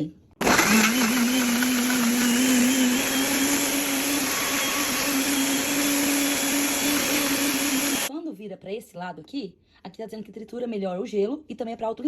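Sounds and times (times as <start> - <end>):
blender motor running: 0.4 - 8.1.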